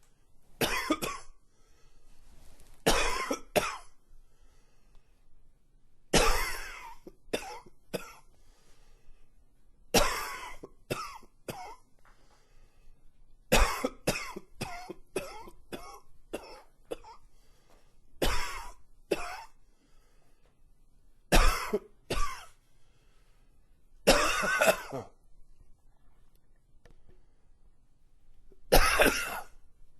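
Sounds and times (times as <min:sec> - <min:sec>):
man coughing: 0:00.6 - 0:01.3, 0:02.9 - 0:03.9, 0:06.2 - 0:08.2, 0:13.5 - 0:17.2, 0:21.3 - 0:22.5, 0:24.1 - 0:25.2, 0:28.7 - 0:29.6.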